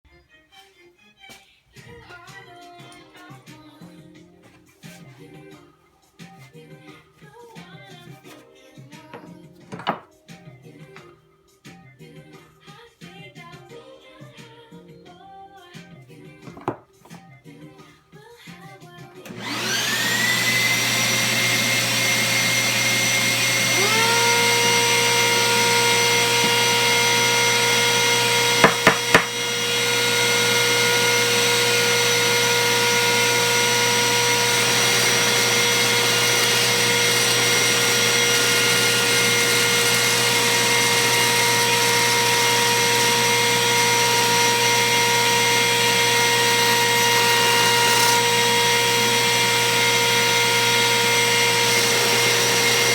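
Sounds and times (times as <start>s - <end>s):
router motor whining: 19.3s - 52.9s
second motor whining: 19.3s - 52.9s.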